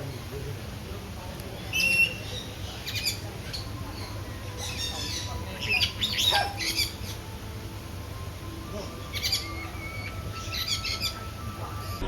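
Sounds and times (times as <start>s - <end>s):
parrots squawking and chattering: 1.7s - 7.4s, 8.8s - 12.0s.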